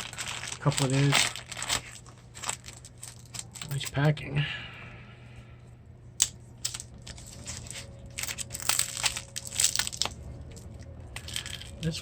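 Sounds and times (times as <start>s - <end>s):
packaging rustling and crinkling: 0.0s - 3.9s, 6.6s - 12.0s.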